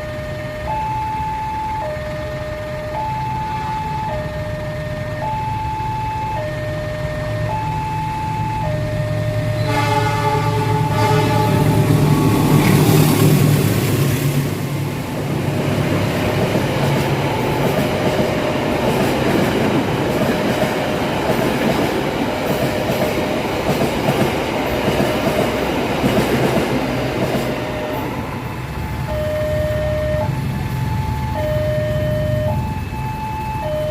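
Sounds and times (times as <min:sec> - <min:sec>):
two-tone crossing alarm: 0:00.0 - 0:12.0, 0:15.6 - 0:23.5, 0:27.3 - 0:33.9
train horn: 0:09.5 - 0:13.1
train wheels clattering on rails: 0:09.7 - 0:28.9.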